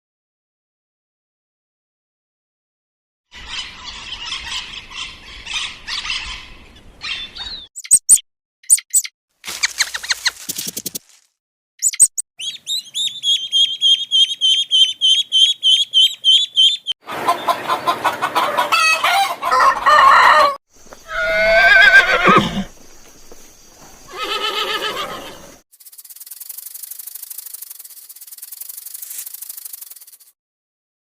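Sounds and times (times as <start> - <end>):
high even chirps: 7.7 - 10.4, 11.8 - 17.0
hen clucking: 11.8 - 22.2
rooster crowing: 17.1 - 22.7.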